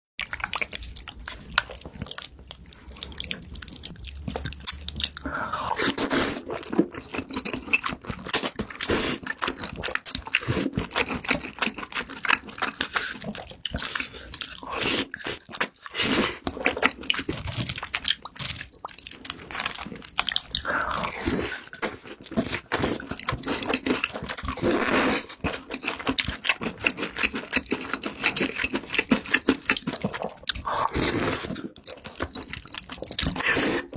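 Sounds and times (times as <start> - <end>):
wet mouth clicks: 0.2 - 6.5
chewing crunchy food: 0.2 - 33.9.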